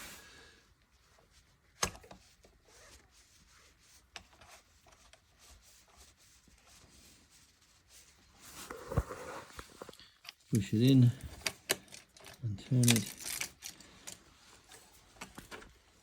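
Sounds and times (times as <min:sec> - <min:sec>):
handling small metal parts: 0:09.8 - 0:15.6.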